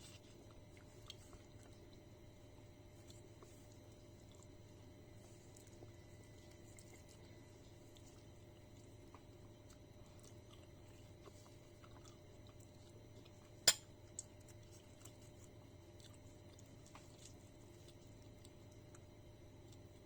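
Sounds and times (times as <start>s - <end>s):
person chewing: 5.3s - 19.1s.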